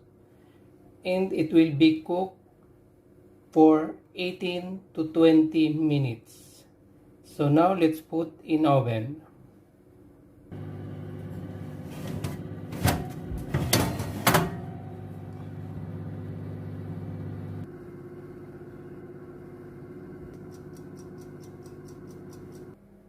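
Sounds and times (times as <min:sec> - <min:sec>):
electric oven humming: 0:09.9 - 0:23.0
tray and oven door clunks: 0:11.9 - 0:14.8
small ticks: 0:20.3 - 0:22.8.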